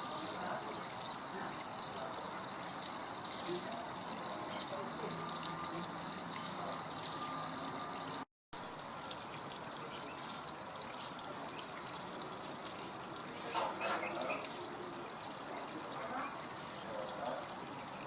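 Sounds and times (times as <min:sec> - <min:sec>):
trickling water: 0:00.0 - 0:18.0.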